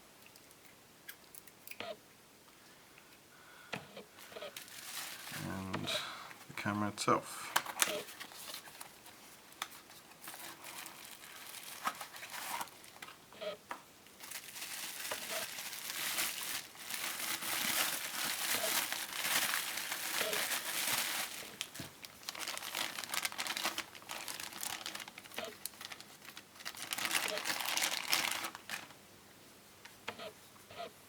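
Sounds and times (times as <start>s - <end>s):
plastic packaging crinkling: 4.2s - 6.1s, 7.6s - 13.2s, 14.2s - 29.0s.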